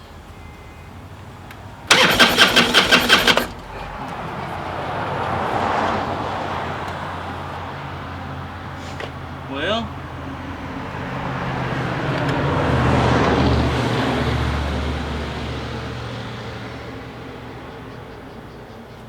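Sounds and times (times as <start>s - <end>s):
motorcycle engine cranking: 1.9s - 4.0s.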